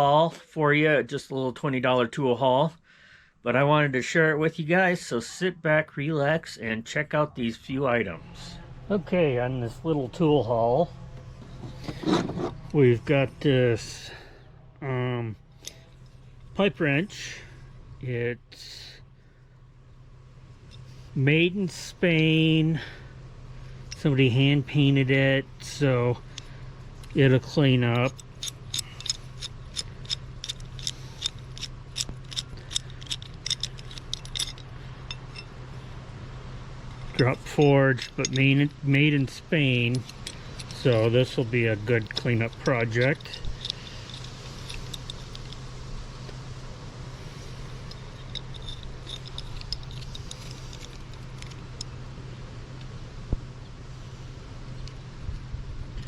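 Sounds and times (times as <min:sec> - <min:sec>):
low steady hum: 0:00.0 - 0:56.0
metallic clinks of hand tools: 0:27.8 - 0:35.5, 0:37.0 - 0:45.6, 0:47.8 - 0:51.9
light metallic clicks: 0:27.9 - 0:35.6, 0:36.9 - 0:46.4, 0:47.4 - 0:52.0.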